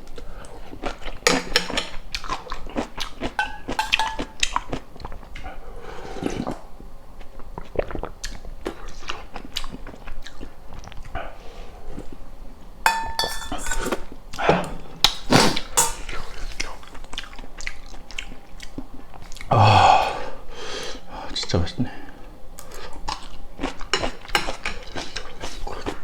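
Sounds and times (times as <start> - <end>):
person chewing food: 0.6 - 5.6, 7.2 - 11.2
utensil clinking against dish: 3.4 - 4.5, 12.9 - 14.1, 15.7 - 16.6.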